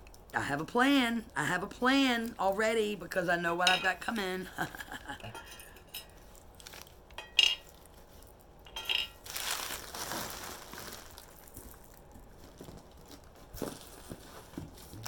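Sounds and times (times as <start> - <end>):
packing paper rustling: 6.3 - 7.0, 9.1 - 15.0
hard objects clinking: 7.1 - 7.8, 8.6 - 9.4.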